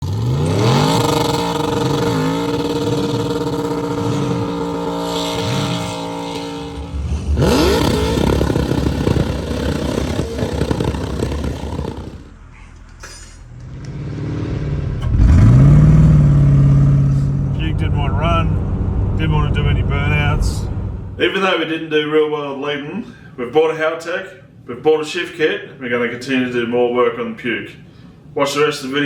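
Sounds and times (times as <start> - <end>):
car engine revving: 0.0 - 12.4, 13.6 - 21.2.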